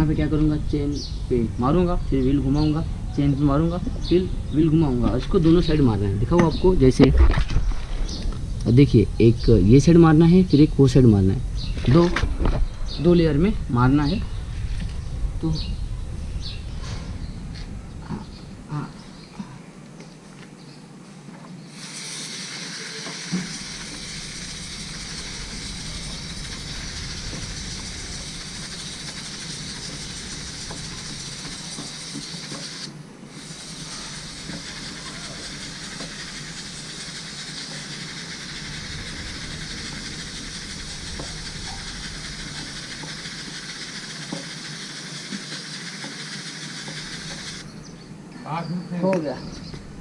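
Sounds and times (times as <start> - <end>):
aerosol spray hissing: 21.7 - 47.7.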